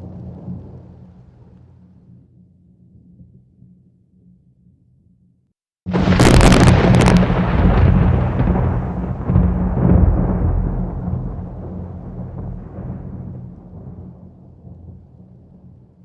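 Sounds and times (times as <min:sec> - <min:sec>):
thunder crack and rumble: 0:05.9 - 0:16.0.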